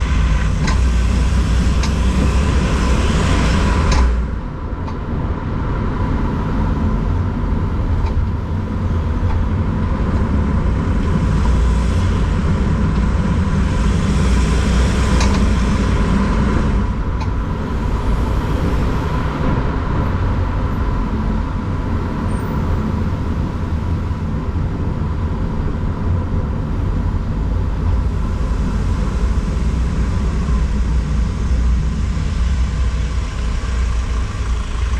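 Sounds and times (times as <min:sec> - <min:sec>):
van engine rumble: 0:00.0 - 0:34.9.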